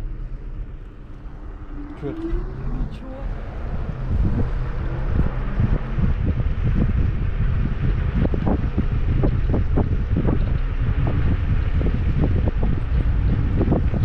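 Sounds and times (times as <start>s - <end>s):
wind buffeting microphone: 0.8s - 14.0s.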